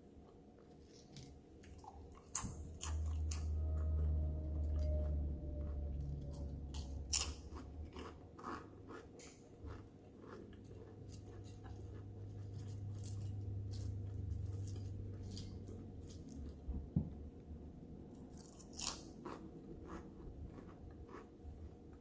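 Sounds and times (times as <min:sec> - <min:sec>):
steady low hum: 0:00.0 - 0:22.0
crunchy food chewing: 0:06.2 - 0:16.6, 0:18.1 - 0:21.8.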